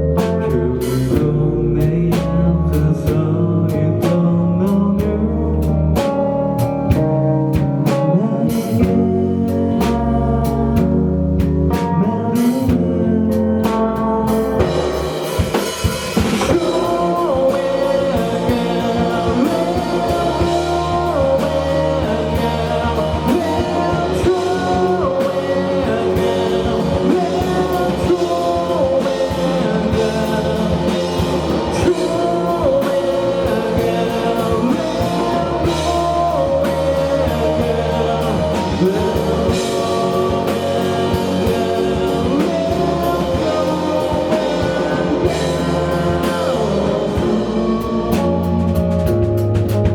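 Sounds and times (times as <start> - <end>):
live rock band playing: 0.0 - 49.9
person singing long notes: 16.5 - 49.2.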